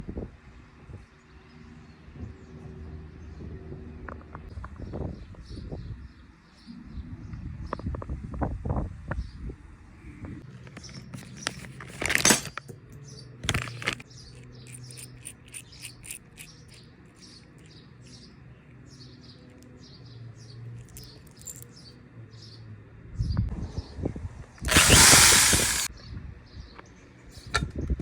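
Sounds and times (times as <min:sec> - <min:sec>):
small birds chirping: 0:12.9 - 0:23.4.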